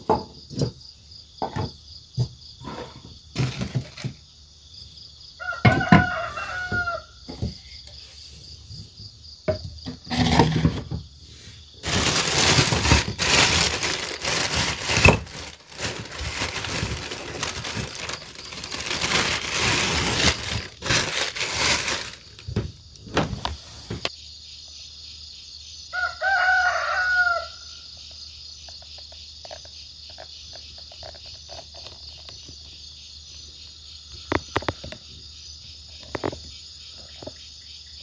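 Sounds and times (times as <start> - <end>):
cockerel crowing: 5.4 - 7.4, 25.9 - 27.9
loud rustling: 11.8 - 24.0.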